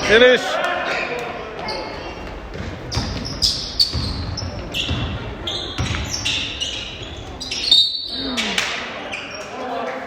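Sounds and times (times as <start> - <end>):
sneakers squeaking on floor: 0.9 - 9.8
basketball bouncing: 2.2 - 7.2.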